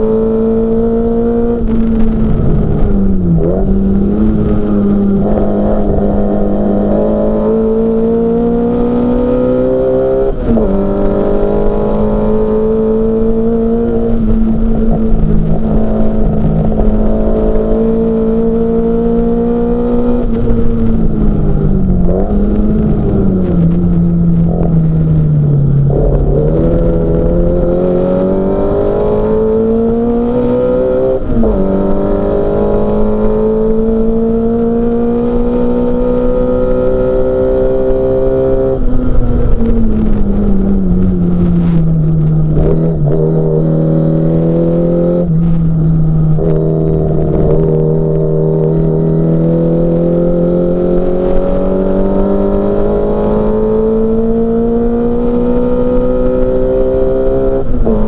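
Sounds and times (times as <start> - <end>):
race car engine at full throttle: 0.0 - 58.0.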